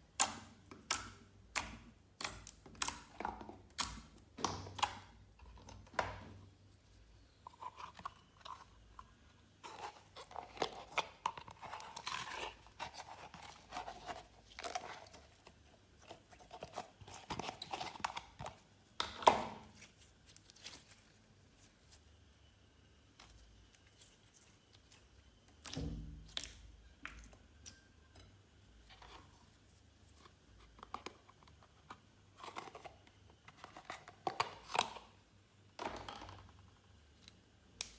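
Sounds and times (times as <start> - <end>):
slime squishing with wet pops: 0.0 - 5.2, 23.1 - 27.9.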